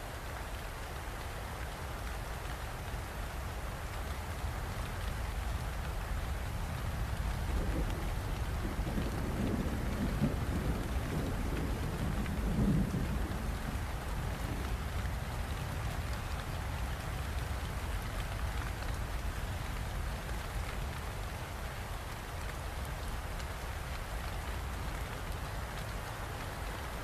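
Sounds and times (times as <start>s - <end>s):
steady rain hissing: 0.0s - 27.0s
distant thunder rumble: 7.5s - 14.7s.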